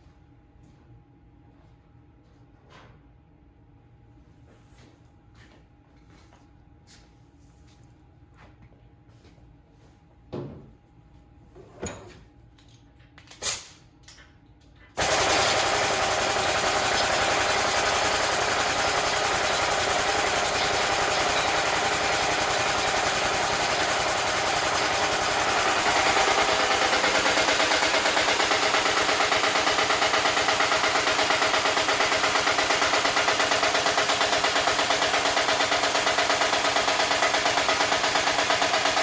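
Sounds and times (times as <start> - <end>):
machine pulsing: 15.0 - 39.0.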